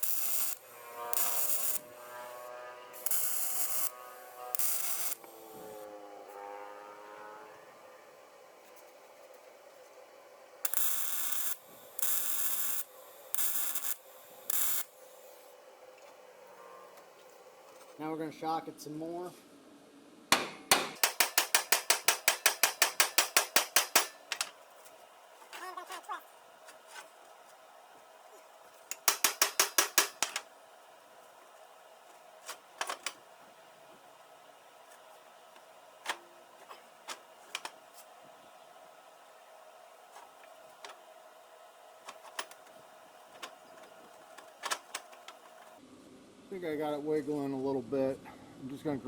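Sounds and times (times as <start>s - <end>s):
pneumatic air hammer bursts: 0.0s - 2.1s, 3.0s - 5.4s
hammer tapping on metal bolt: 20.3s - 24.5s, 28.9s - 30.4s.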